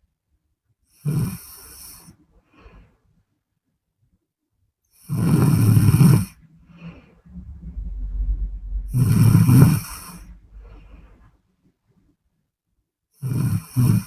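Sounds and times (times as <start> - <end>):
low breathing: 5.4 - 11.3.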